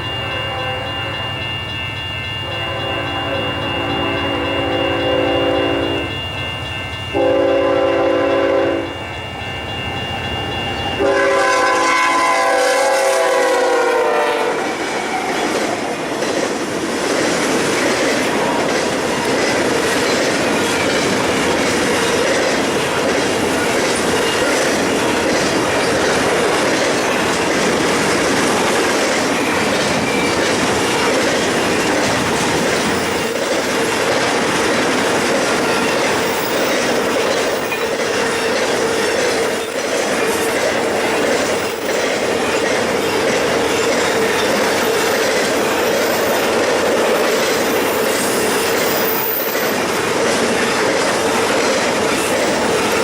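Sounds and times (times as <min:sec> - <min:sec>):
locomotive horn: 0:00.0 - 0:01.2, 0:02.5 - 0:06.1, 0:07.1 - 0:09.0, 0:11.0 - 0:14.7
train wheels clattering: 0:09.6 - 0:53.0.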